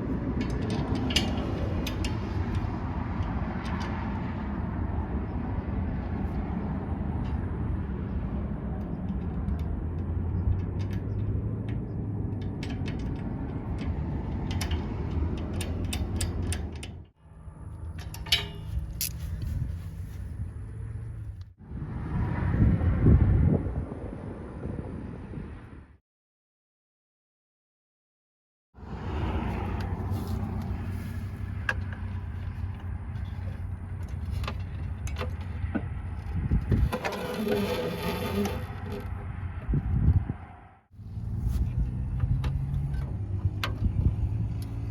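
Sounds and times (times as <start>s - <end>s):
tractor engine rumbling: 0.0s - 22.2s, 28.8s - 44.9s
metallic clicks and clanks: 0.1s - 4.3s, 8.8s - 17.2s, 17.8s - 19.6s, 30.5s - 39.2s.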